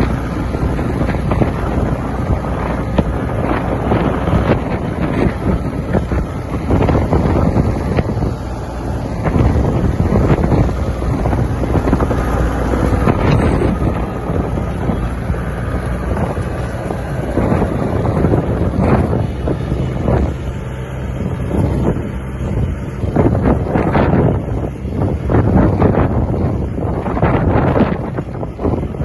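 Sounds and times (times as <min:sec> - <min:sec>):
diesel engine running: 0:00.0 - 0:29.0
wind buffeting microphone: 0:00.0 - 0:29.0.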